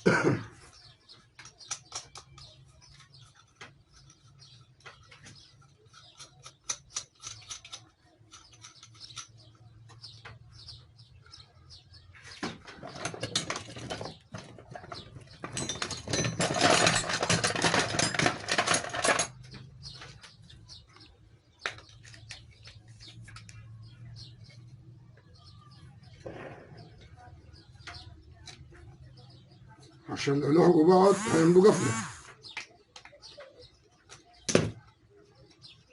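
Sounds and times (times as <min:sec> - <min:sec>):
small clicks and clinks: 0:00.7 - 0:10.8, 0:12.6 - 0:24.6.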